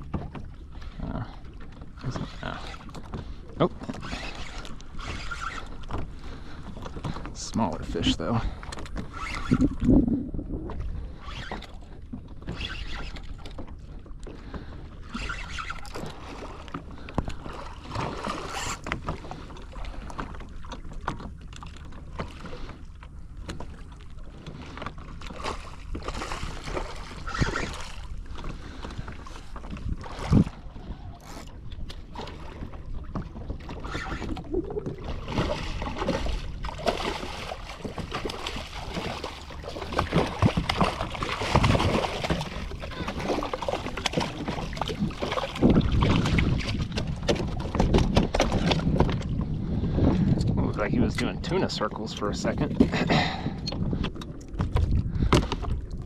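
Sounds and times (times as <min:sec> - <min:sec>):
water sloshing: 0:00.0 - 0:56.0
knocks and clicks on kayak: 0:39.8 - 0:49.4, 0:52.7 - 0:56.0.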